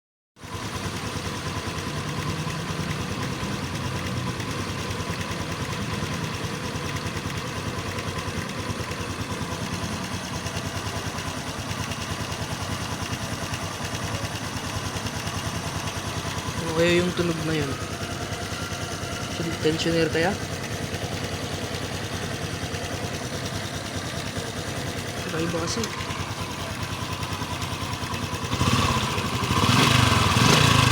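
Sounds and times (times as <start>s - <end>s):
engine knocking: 0.4s - 30.9s
motorcycle engine idling: 0.4s - 30.9s.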